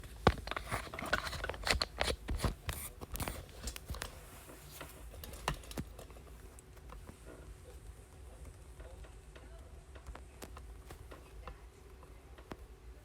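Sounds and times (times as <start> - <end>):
packaging crinkling and tearing: 0.0 - 4.1.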